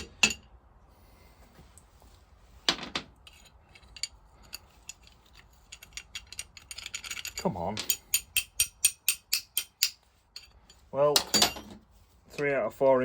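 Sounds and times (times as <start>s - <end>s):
hand tools clinking on metal: 3.3s - 11.8s.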